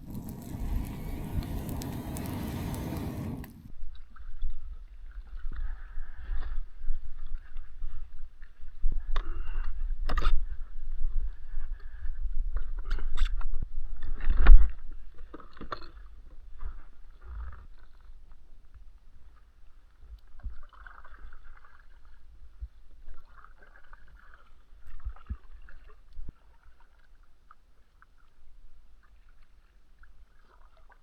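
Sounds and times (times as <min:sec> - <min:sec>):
rushing noise: 0:00.0 - 0:03.7
wind rumble on microphone: 0:00.0 - 0:14.9.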